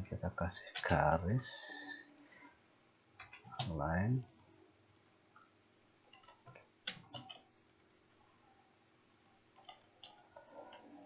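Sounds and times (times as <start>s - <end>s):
computer mouse clicks: 4.3s - 5.5s, 6.1s - 7.9s, 9.1s - 10.9s.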